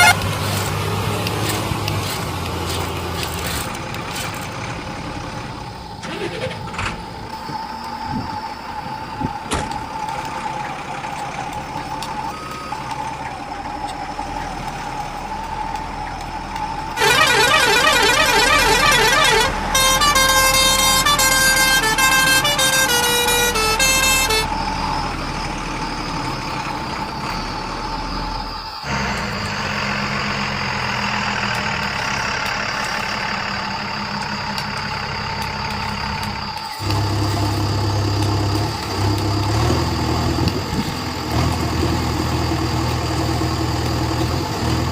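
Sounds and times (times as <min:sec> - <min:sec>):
warbling siren-like tone: 0:00.0 - 0:00.6
toy truck motor whining: 0:00.0 - 0:04.6, 0:06.0 - 0:44.9
stepped beeping notes: 0:17.0 - 0:24.6.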